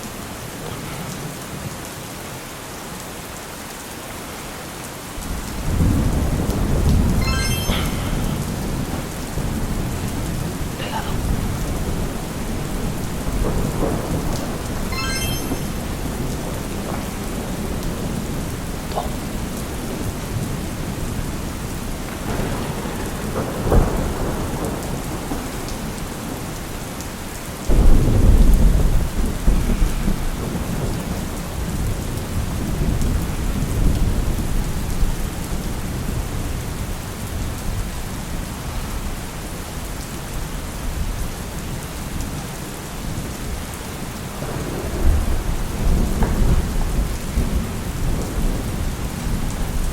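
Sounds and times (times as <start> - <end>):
steady rain: 0.0 - 49.9
thunder: 5.2 - 26.9, 27.6 - 37.8, 44.3 - 49.9.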